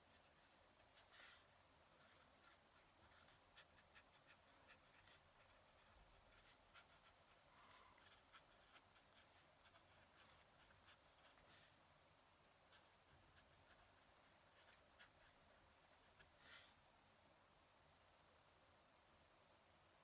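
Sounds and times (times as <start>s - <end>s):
pen nib scratching paper: 0.0s - 11.8s, 12.6s - 16.8s.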